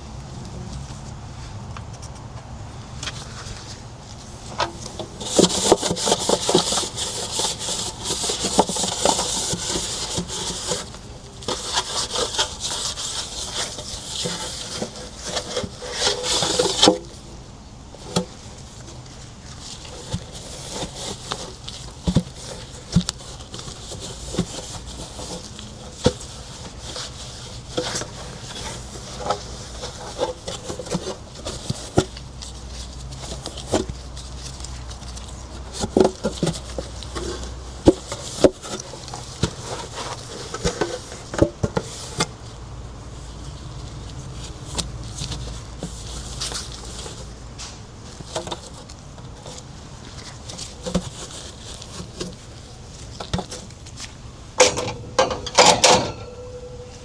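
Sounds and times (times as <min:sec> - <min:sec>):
scrubbing a hard surface: 0:04.8 - 0:17.2, 0:18.0 - 0:42.3, 0:48.0 - 0:54.2.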